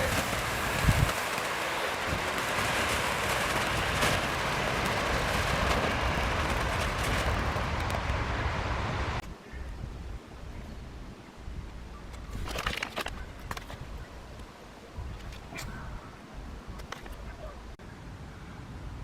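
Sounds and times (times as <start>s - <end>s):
firework pops: 0.0s - 8.6s
firework fountain hissing: 0.0s - 9.2s.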